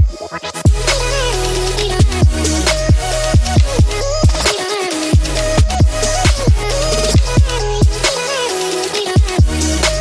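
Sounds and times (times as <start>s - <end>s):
deep kick drum beat: 0.7s - 0.9s, 2.0s - 4.4s, 5.2s - 8.0s, 9.2s - 9.6s.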